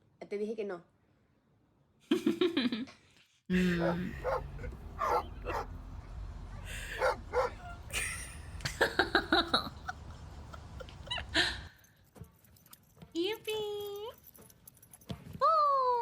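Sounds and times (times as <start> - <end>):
dog barking and yipping: 3.8 - 5.8, 6.9 - 7.9.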